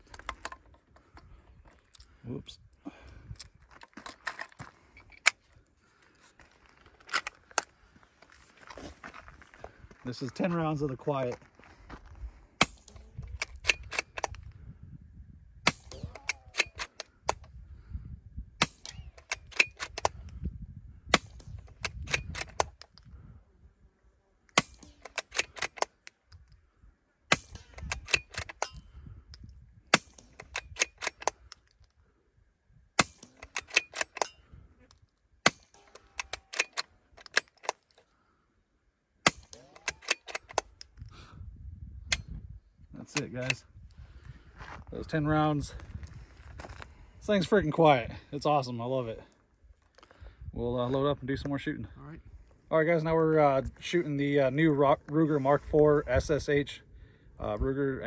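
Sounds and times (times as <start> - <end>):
rifle bolt clicking: 12.9 - 14.4, 15.7 - 17.5, 18.7 - 20.2, 21.6 - 22.9, 24.6 - 26.1, 27.4 - 28.8, 30.0 - 31.6, 33.0 - 34.4, 35.5 - 38.0, 39.3 - 40.9
suppressed rifle shots: 15.7 - 17.4, 27.3 - 28.8, 33.0 - 34.3, 39.2 - 40.7.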